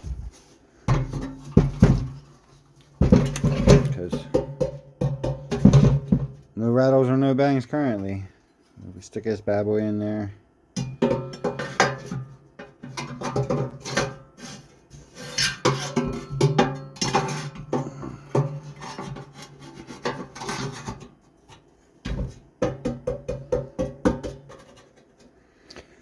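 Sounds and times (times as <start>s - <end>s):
metal clinks knocks and scrapes: 15.0s - 21.2s.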